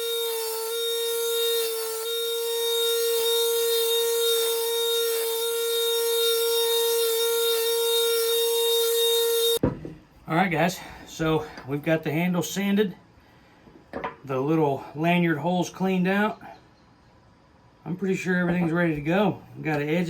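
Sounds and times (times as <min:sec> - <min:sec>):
electric grinder whining: 0:00.0 - 0:09.6.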